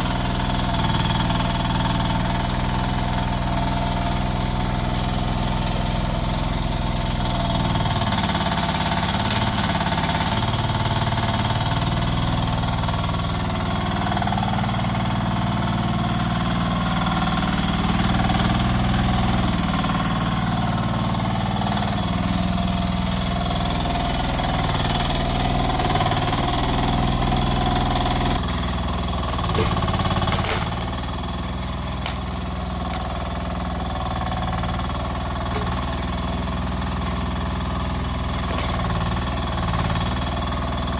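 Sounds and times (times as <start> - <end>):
excavator engine running: 0.0 - 40.9.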